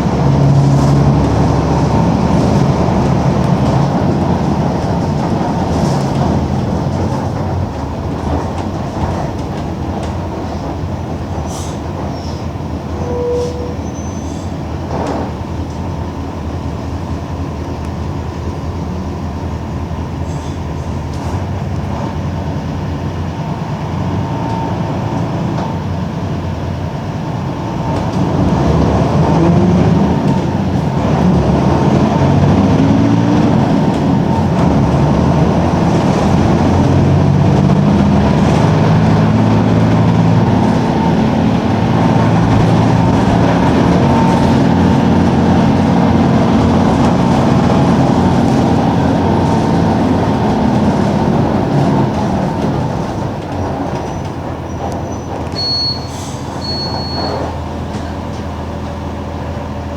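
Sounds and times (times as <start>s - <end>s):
bus diesel engine running: 0.0s - 59.9s.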